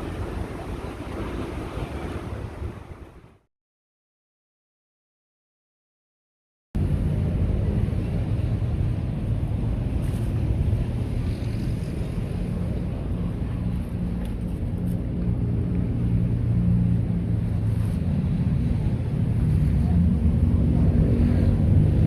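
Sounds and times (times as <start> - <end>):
sea waves: 0.0 - 3.5, 6.8 - 22.0
low engine drone: 6.8 - 22.0
wind on microphone: 6.8 - 22.0.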